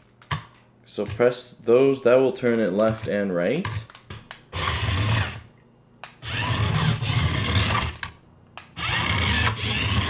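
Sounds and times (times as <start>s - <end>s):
toy car electric motor whirring: 4.5s - 5.4s, 6.2s - 8.0s, 8.8s - 10.0s.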